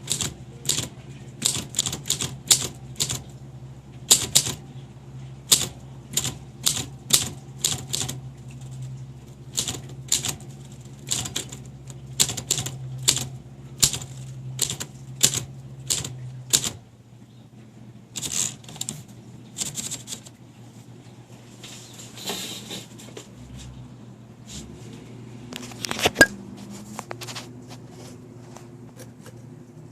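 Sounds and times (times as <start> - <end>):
typewriter key strikes: 0.0 - 3.2, 4.1 - 4.6, 5.5 - 8.2, 9.6 - 10.4, 11.1 - 11.6, 12.2 - 16.8, 18.2 - 18.9
typewriter rattling: 0.0 - 3.3, 4.1 - 4.6, 5.5 - 8.9, 9.5 - 16.8, 18.2 - 20.3.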